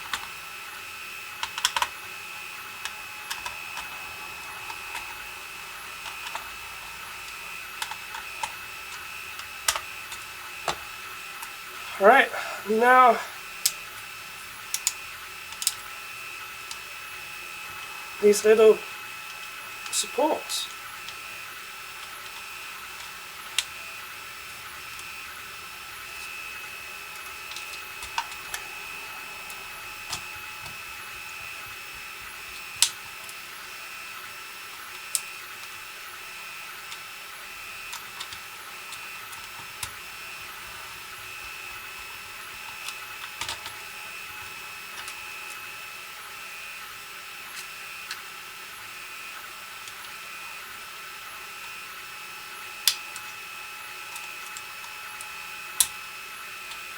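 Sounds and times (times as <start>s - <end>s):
steady high-pitched whine: 0.0s - 56.9s
plastic parts clicking and tapping: 1.4s - 1.9s, 2.8s - 3.9s, 6.0s - 10.8s, 14.7s - 15.8s, 22.0s - 23.8s, 27.2s - 28.6s, 32.5s - 33.4s, 34.7s - 35.8s, 37.8s - 43.8s, 44.4s - 45.6s, 54.1s - 56.0s.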